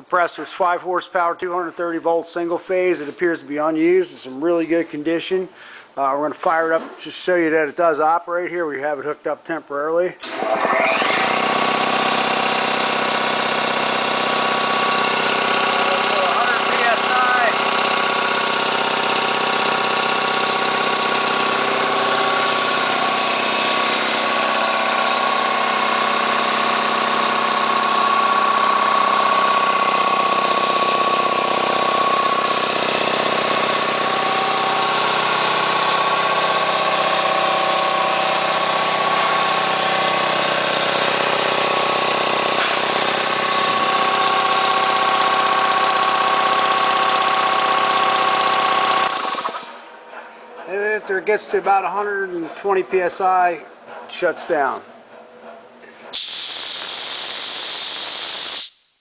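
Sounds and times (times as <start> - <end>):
air compressor running: 10.2 - 52.6, 54.7 - 58.8.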